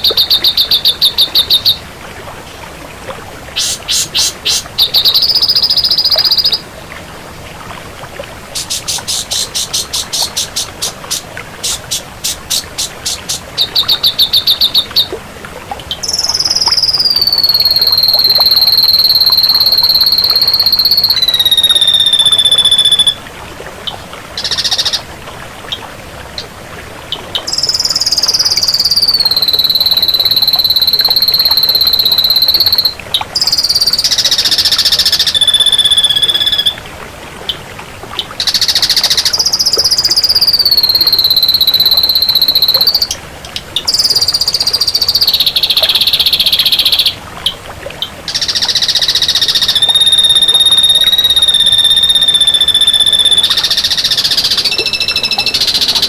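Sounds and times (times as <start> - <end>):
bird singing: 0.0 - 1.8, 3.6 - 6.6, 8.5 - 15.1, 16.0 - 23.2, 27.5 - 36.8, 38.4 - 43.1, 43.8 - 47.2, 48.3 - 56.0.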